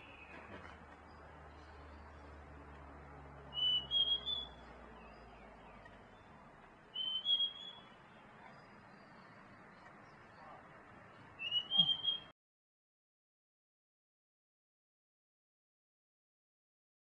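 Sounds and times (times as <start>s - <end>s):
bird whistled calls: 3.5s - 5.2s, 6.9s - 8.0s, 11.4s - 12.3s.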